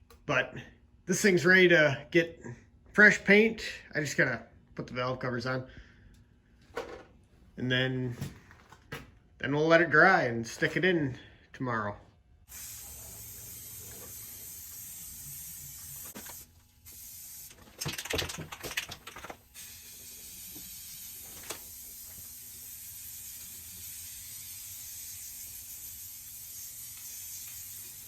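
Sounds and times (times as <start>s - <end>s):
spray paint hissing: 12.5s - 28.0s.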